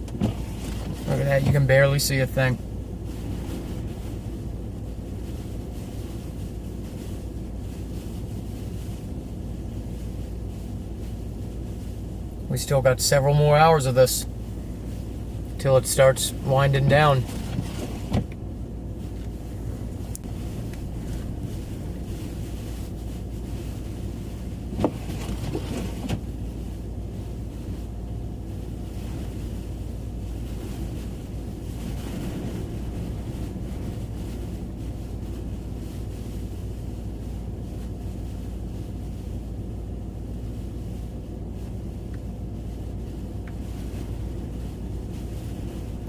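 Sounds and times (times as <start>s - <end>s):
blizzard wind rumbling: 2.1s - 12.6s, 13.8s - 46.0s
wind gusts: 30.4s - 36.4s.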